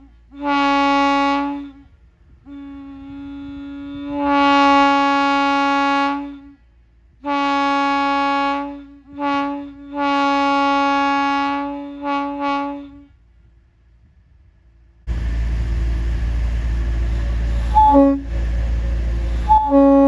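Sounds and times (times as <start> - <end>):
railroad air horn blasts: 0.0 - 13.5, 17.0 - 20.0.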